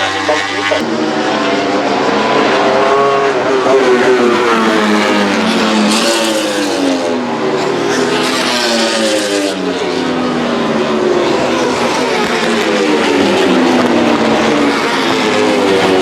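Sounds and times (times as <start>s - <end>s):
racing motorcycles passing: 0.0s - 16.0s.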